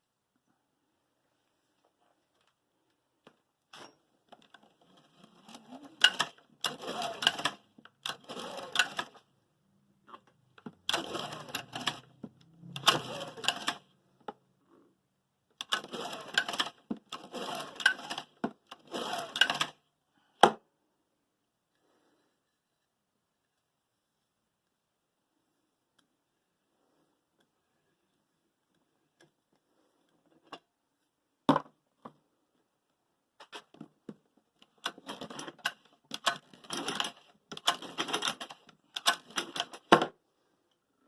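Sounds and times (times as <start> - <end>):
clattering of small mechanical parts: 3.7 - 9.3, 10.1 - 13.9, 15.6 - 19.8, 34.6 - 40.0.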